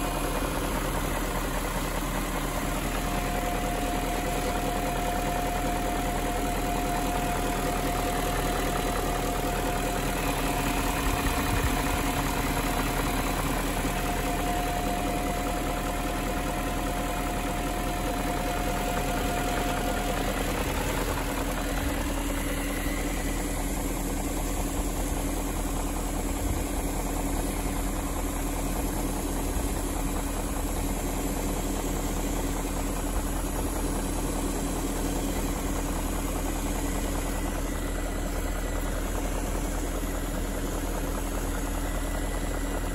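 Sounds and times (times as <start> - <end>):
steady whine: 0.0 - 25.3
car engine idling: 0.0 - 42.9.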